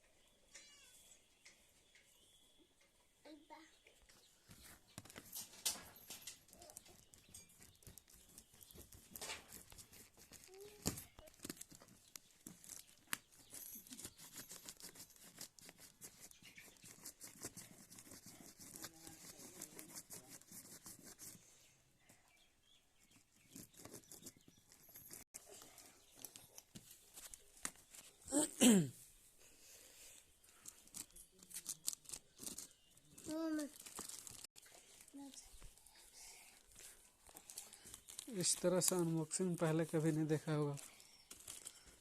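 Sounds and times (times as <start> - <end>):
packaging crinkling and tearing: 6.6 - 16.3, 30.6 - 35.4, 37.2 - 40.0, 40.7 - 42.0.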